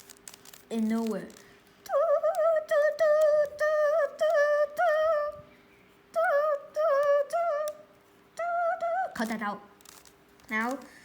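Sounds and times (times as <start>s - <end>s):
child humming a tune: 1.8s - 5.5s, 6.1s - 9.2s.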